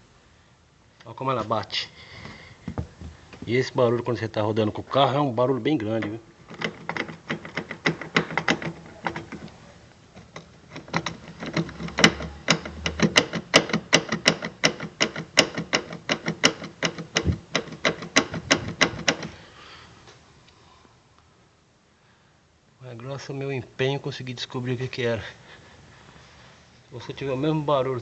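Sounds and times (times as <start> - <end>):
seat belt retractor knocking: 6.5 - 9.4, 10.3 - 19.4.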